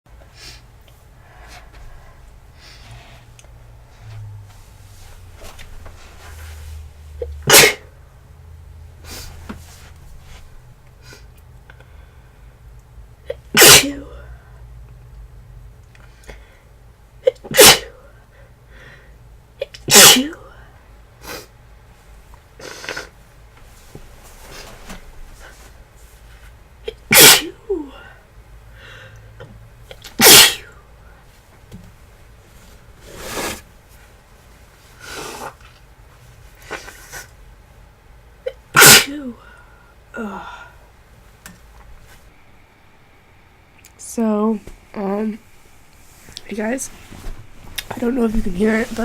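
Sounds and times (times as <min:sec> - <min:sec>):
person breathing faintly: 0:00.3 - 0:04.4, 0:27.9 - 0:29.4
person sneezing: 0:07.5 - 0:07.9, 0:13.3 - 0:14.3, 0:17.2 - 0:18.1, 0:19.7 - 0:20.6, 0:22.6 - 0:23.2, 0:26.8 - 0:28.0, 0:30.0 - 0:30.8, 0:38.5 - 0:39.6.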